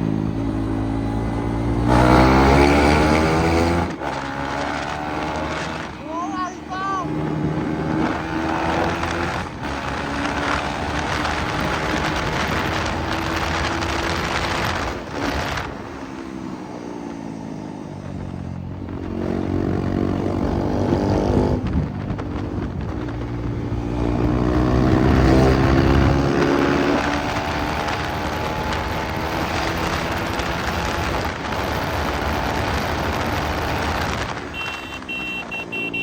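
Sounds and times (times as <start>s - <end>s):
wind rushing over microphone: 0.4s - 16.5s, 18.0s - 34.7s
motorcycle engine running: 18.0s - 36.0s.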